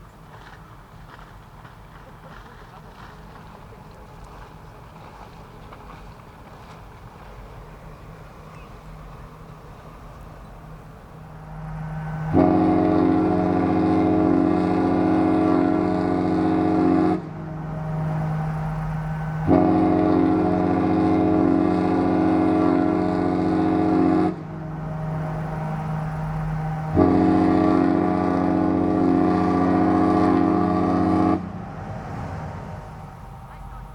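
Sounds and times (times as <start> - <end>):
lower steady tone: 8.6 - 15.2, 17.1 - 20.9
ship horn blasts: 10.5 - 33.9.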